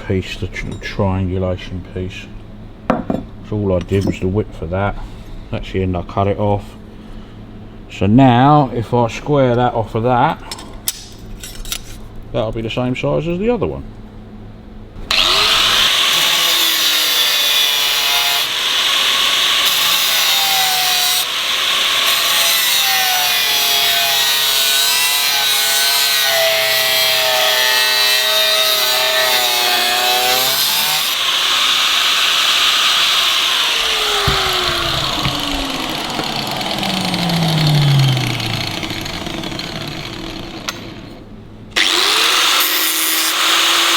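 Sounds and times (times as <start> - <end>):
power tool whining: 15.0 - 43.9.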